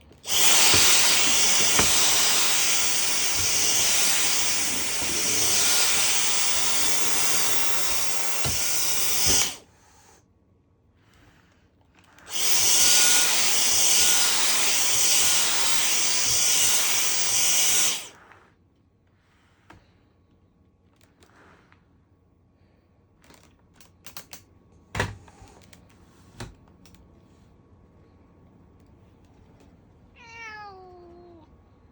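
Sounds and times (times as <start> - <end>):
vacuum cleaner running: 0.0 - 9.6, 12.3 - 18.2
hissing noise: 0.2 - 9.6, 12.3 - 18.1.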